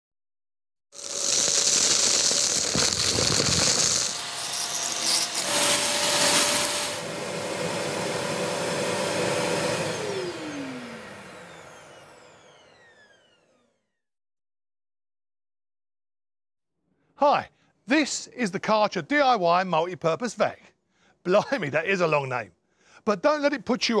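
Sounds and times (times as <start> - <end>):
motor winding down: 1.0 - 14.0
vacuum cleaner motor whine: 1.0 - 14.0.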